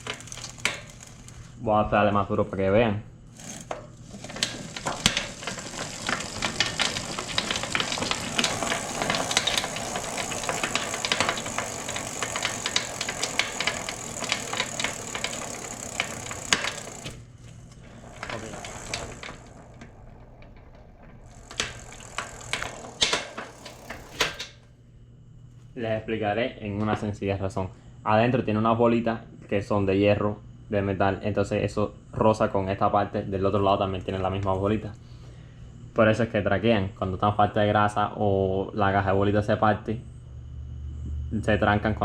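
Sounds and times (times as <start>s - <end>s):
bicycle hub clicking rattle: 0.0s - 2.3s, 3.3s - 24.6s.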